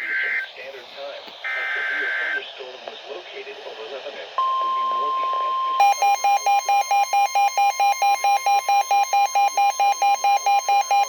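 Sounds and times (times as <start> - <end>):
electronic alarm beeping: 0.0 - 0.5, 1.4 - 2.4, 4.4 - 11.0
steady warning tone: 0.0 - 0.7, 1.4 - 2.5, 4.4 - 11.0.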